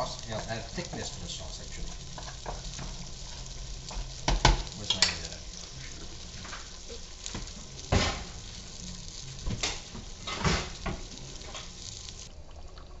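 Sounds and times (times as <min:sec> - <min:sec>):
sauce sizzling in a pot: 0:00.0 - 0:12.5
utensil clanking against cookware: 0:09.5 - 0:11.7.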